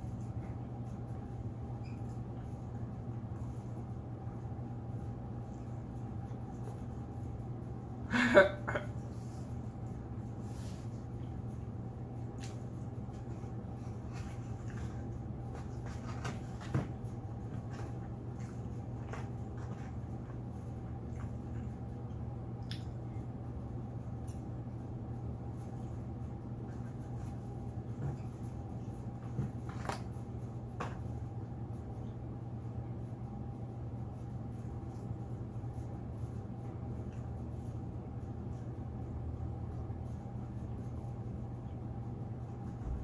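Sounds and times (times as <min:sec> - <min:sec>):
steady low hum: 0:00.0 - 0:43.0
chewing and handling food: 0:09.0 - 0:24.6.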